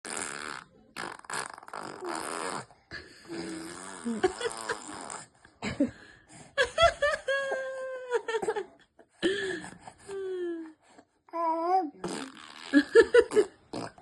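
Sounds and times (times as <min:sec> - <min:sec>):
fart-like sputtering: 0:00.0 - 0:05.4, 0:12.0 - 0:14.0.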